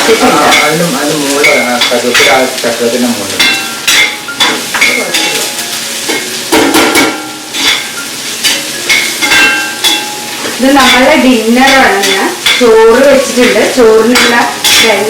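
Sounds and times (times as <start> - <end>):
vegetables sizzling in oil: 0.0 - 15.0
metal spoon scraping pan: 6.9 - 15.0.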